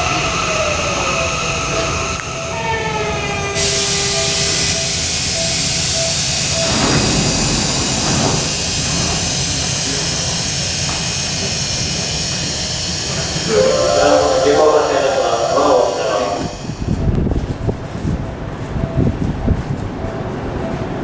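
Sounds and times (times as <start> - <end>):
electric train motors whining: 0.0 - 17.1
loud steady hiss: 3.6 - 16.9.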